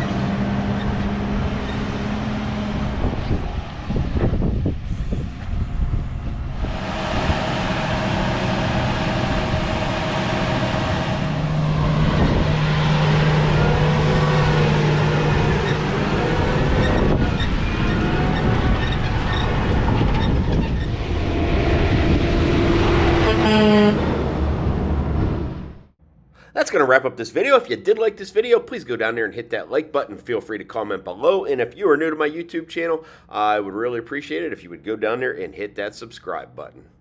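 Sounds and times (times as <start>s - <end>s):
harvest machinery droning: 0.0s - 25.2s
short rising whine: 0.6s - 25.9s.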